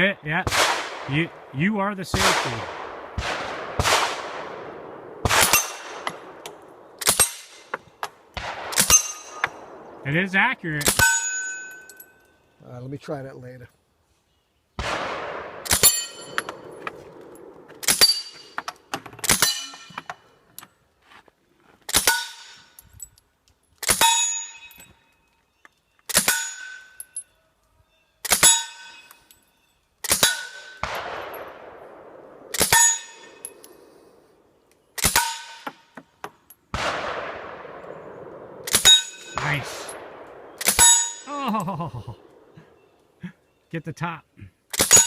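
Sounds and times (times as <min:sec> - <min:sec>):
suppressed gunshots: 0:00.5 - 0:01.5, 0:02.1 - 0:10.1, 0:14.8 - 0:19.6, 0:30.0 - 0:33.7, 0:36.7 - 0:41.0
bullet ringing on steel target: 0:08.8 - 0:09.6, 0:10.9 - 0:12.2, 0:15.8 - 0:16.7, 0:19.4 - 0:20.0, 0:24.0 - 0:24.9, 0:26.2 - 0:27.2, 0:32.7 - 0:33.7, 0:38.8 - 0:40.1, 0:40.8 - 0:41.3.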